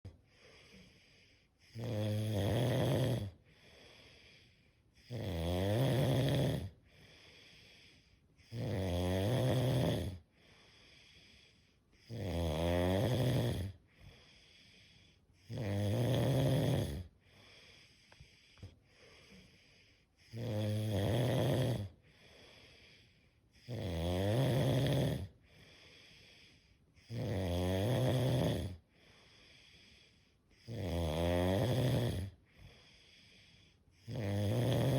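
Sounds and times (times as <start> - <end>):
soft breathing: 0.1 - 1.7, 3.3 - 5.0, 6.7 - 8.4, 10.2 - 12.1, 13.7 - 15.5, 17.0 - 20.4, 21.9 - 23.6, 25.3 - 27.0, 28.8 - 30.6, 32.2 - 34.1
person snoring: 0.3 - 34.9.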